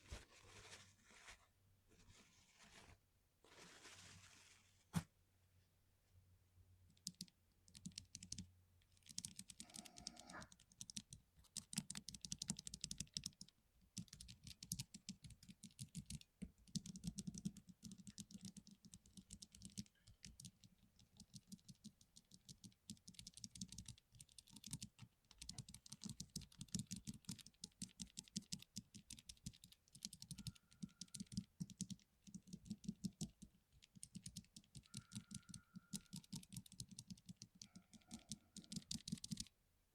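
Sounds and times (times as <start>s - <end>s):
mechanical keyboard typing: 7.0s - 39.5s.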